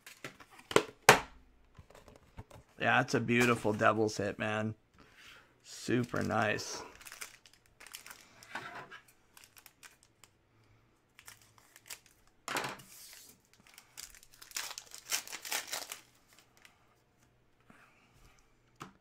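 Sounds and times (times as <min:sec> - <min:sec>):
card pack wrappers crinkling and tearing: 0:05.9 - 0:08.5, 0:09.3 - 0:10.4, 0:11.2 - 0:16.7.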